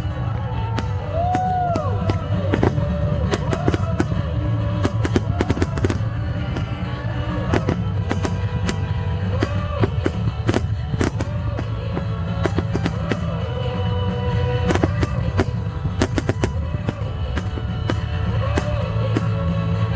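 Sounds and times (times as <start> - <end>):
fireworks bangs and crackles: 0.0 - 19.9.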